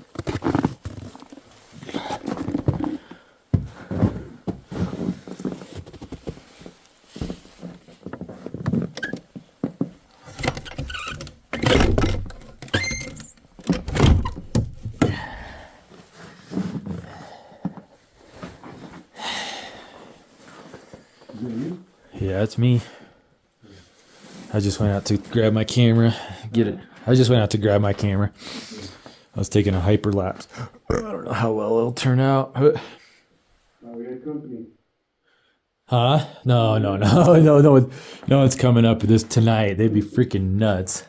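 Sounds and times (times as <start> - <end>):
thuds and knocks: 11.6 - 15.4.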